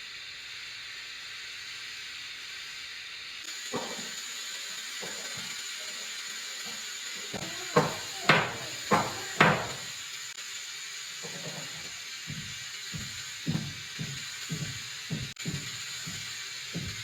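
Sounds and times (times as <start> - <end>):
garment steamer hissing: 0.0 - 17.0
sharp knocks: 7.8 - 9.9, 11.3 - 16.2.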